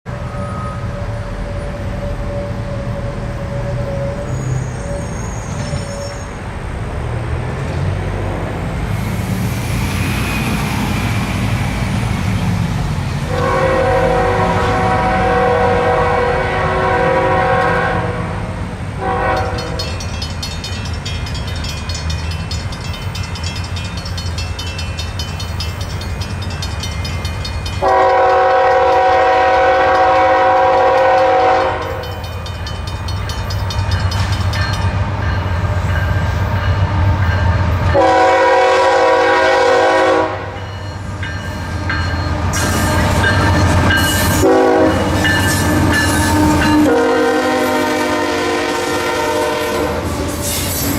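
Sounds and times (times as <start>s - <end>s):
low rumble of passing train: 0.1s - 50.9s
locomotive horn blasts: 13.3s - 18.4s, 19.0s - 20.0s, 27.8s - 32.1s, 37.9s - 40.6s, 44.3s - 50.1s.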